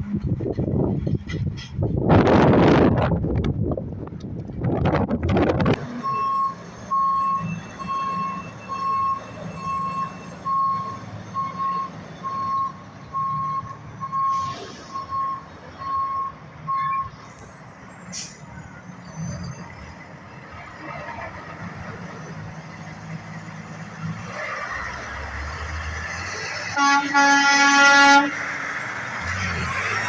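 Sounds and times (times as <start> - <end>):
truck engine running low: 0.0 - 30.0
truck backup alarm beeping: 5.8 - 17.2.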